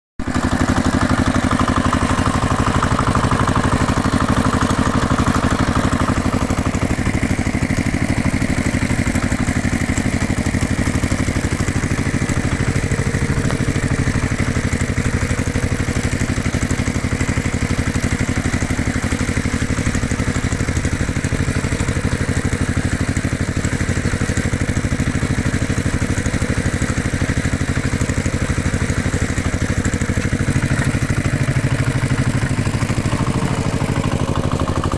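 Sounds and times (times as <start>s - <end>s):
tractor engine chugging: 0.2s - 34.9s.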